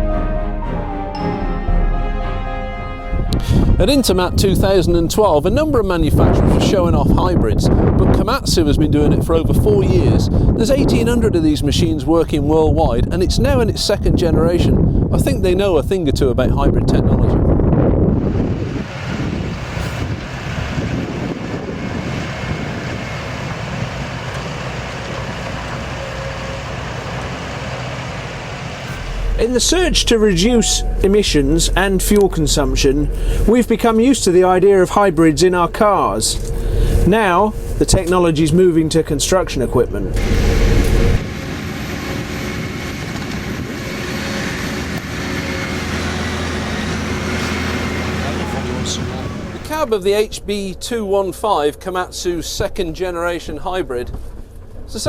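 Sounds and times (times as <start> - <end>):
excavator engine droning: 17.7 - 51.1.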